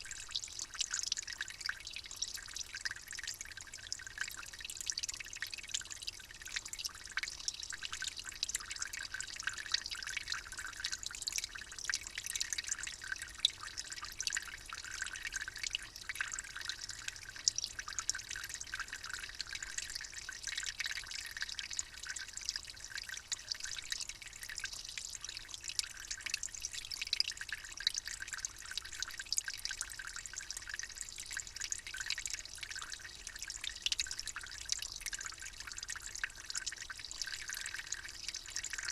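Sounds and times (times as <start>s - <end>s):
water dripping and trickling: 0.0s - 38.9s.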